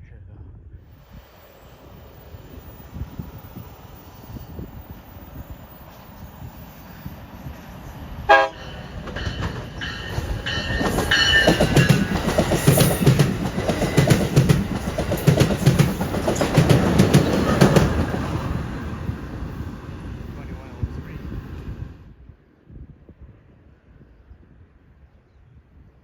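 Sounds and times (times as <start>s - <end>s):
train horn blast: 8.2s - 8.9s
train wheels clickety-clack: 8.3s - 20.7s.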